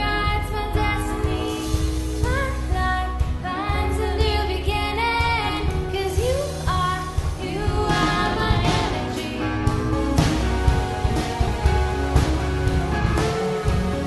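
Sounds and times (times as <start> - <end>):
strong steady bass: 0.0 - 14.0
worship band music: 0.0 - 14.0.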